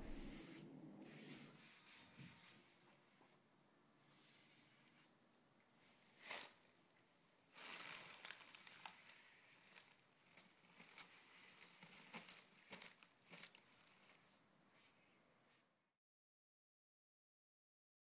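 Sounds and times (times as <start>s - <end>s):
faint rustling and crinkling: 4.0s - 15.8s.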